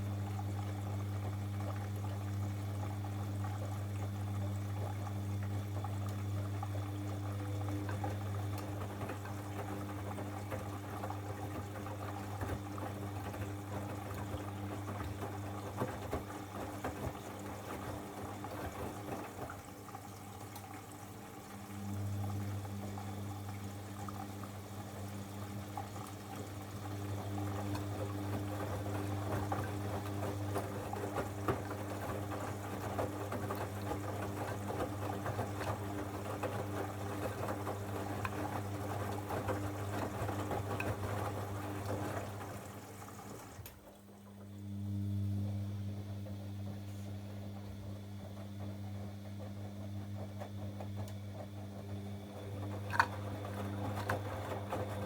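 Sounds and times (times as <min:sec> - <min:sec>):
washing machine motor hum: 0:00.0 - 0:55.0
water sloshing in washing machine: 0:00.0 - 0:55.0.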